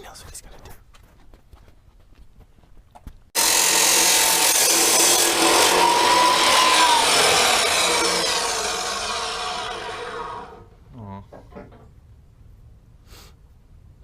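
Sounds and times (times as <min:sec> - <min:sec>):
handheld power tool cutting: 0:03.4 - 0:10.7.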